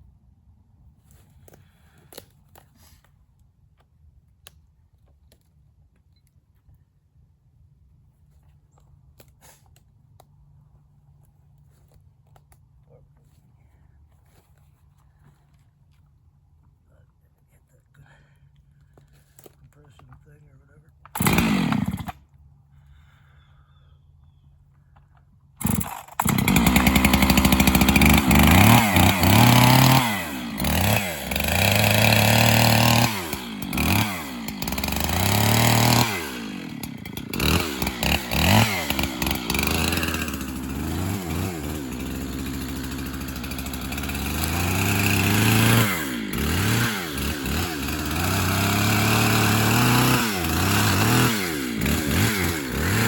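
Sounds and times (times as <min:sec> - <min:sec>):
chainsaw revving while cutting: 0:21.2 - 0:22.2, 0:25.6 - 0:53.0.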